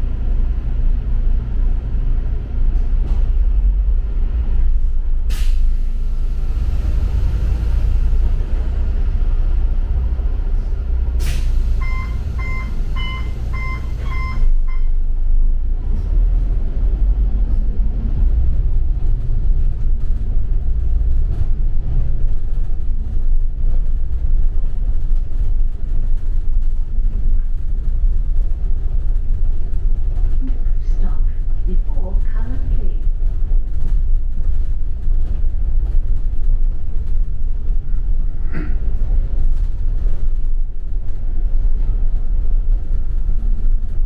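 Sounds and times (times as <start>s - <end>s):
bus engine and road rumble: 0.0s - 44.0s
short electronic beeps: 11.8s - 15.0s.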